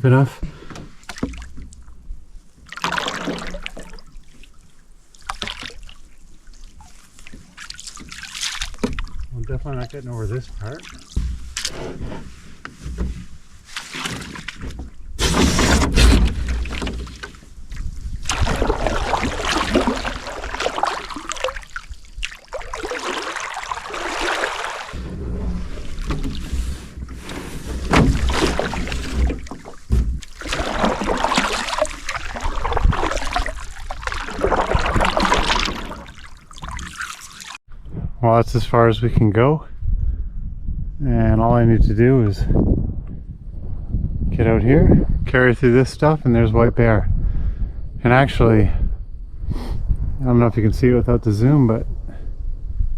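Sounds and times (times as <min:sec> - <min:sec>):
paddle strokes: 0:00.4 - 0:37.6
water sloshing at hull: 0:00.4 - 0:37.8.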